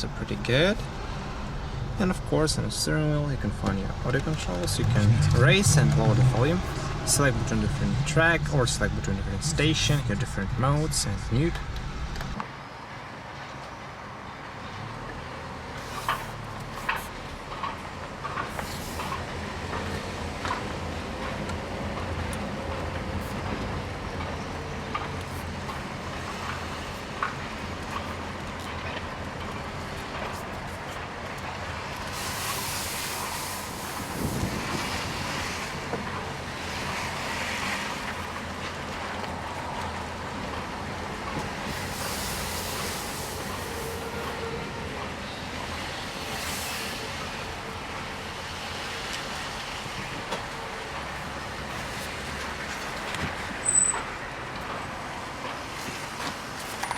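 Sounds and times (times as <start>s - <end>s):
car engine hum: 0.0s - 12.4s
road noise: 0.0s - 56.9s
rushing hiss: 32.0s - 38.3s, 41.5s - 44.4s, 45.6s - 50.0s.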